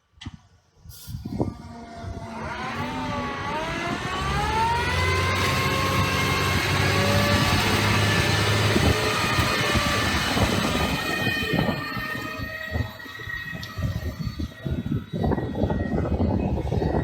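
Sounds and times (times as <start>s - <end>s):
dump truck diesel engine revving: 1.3s - 14.0s.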